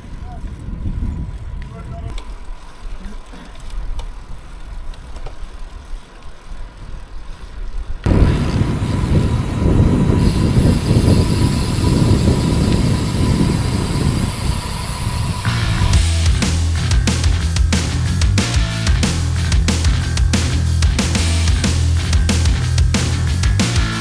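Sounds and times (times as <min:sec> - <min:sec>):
wind buffeting microphone: 0:00.0 - 0:02.2, 0:07.8 - 0:16.2.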